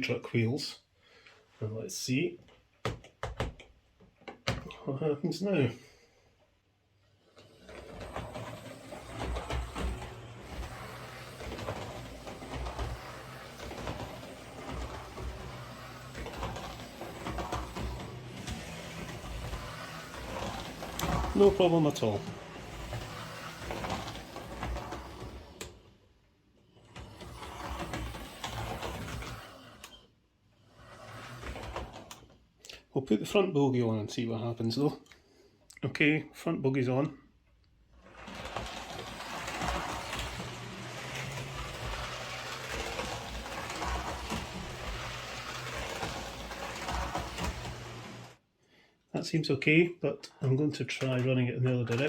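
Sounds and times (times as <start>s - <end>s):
model train motor whirring: 7.2s - 25.9s, 26.8s - 30.0s, 30.6s - 32.3s, 38.0s - 48.4s
wheels clicking over rail joints: 7.5s - 25.7s, 38.2s - 48.4s.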